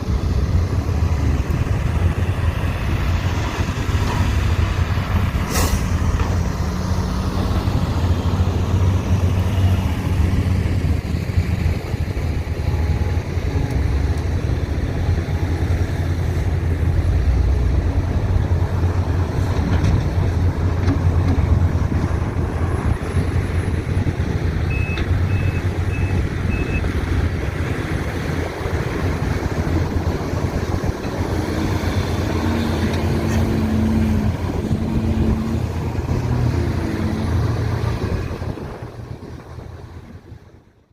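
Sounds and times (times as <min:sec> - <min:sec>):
diesel engines droning: 0:00.0 - 0:40.9
backup alarm beeping: 0:24.7 - 0:26.8.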